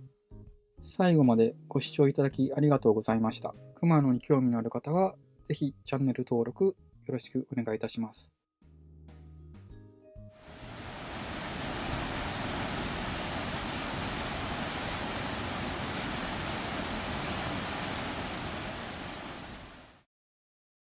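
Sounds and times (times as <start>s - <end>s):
waterfall roaring: 10.4s - 20.0s.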